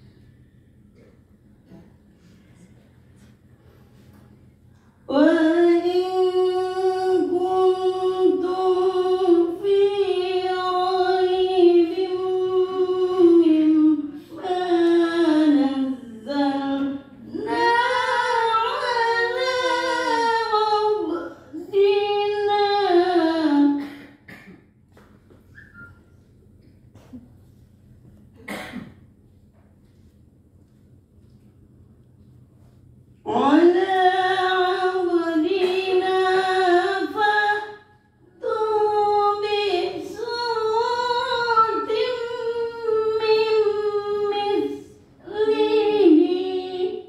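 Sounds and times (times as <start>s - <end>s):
woman chanting melodically: 5.1s - 23.8s, 33.3s - 47.0s.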